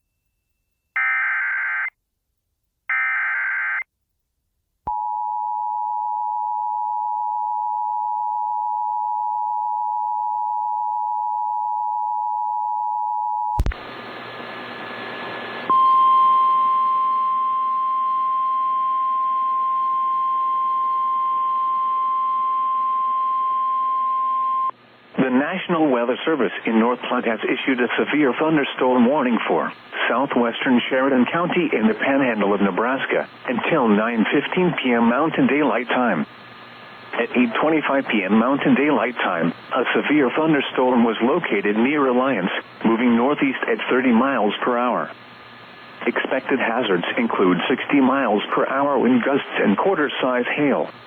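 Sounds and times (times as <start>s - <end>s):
steady warning alarm tone: 1.0s - 1.9s, 2.9s - 3.8s
click: 13.6s - 13.8s
radio static hiss: 25.1s - 51.0s.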